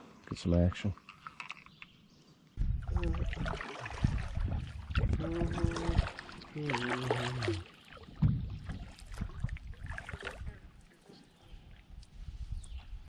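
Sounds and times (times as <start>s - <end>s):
water sounds: 2.6s - 12.1s.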